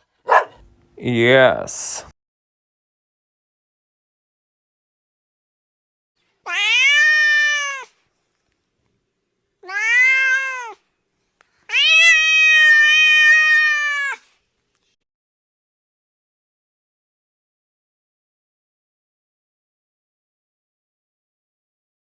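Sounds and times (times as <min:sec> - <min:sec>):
cat meowing: 0:06.5 - 0:07.9, 0:09.6 - 0:10.8, 0:11.7 - 0:14.2.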